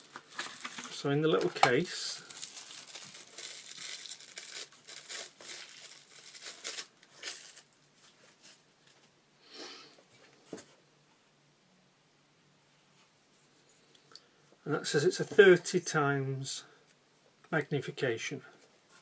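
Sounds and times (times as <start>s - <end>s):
packaging rustling and crinkling: 0.0s - 9.1s.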